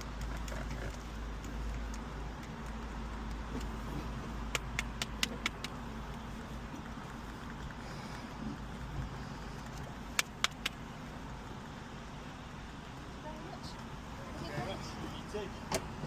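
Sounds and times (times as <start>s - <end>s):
low outdoor rumble: 0.0s - 16.0s
sharp clicks: 4.4s - 7.8s, 9.6s - 10.9s.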